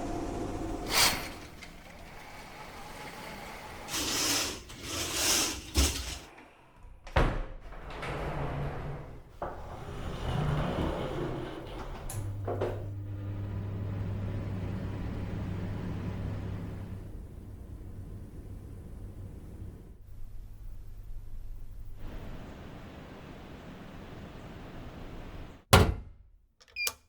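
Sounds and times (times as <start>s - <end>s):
air conditioning hum: 0.0s - 25.6s
door shutting: 0.5s - 15.6s, 25.6s - 27.0s
curtain swishing slides: 2.1s - 6.3s.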